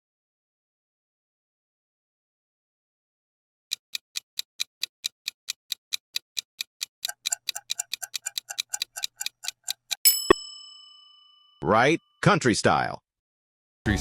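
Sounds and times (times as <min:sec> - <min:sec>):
clock ticking: 0:03.7 - 0:10.4.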